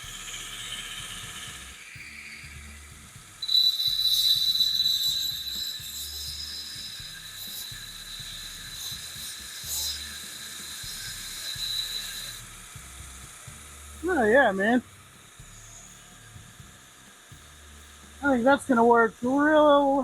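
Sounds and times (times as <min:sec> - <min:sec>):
belt grinder whine: 0:00.0 - 0:20.0
low motor hum: 0:00.0 - 0:20.0.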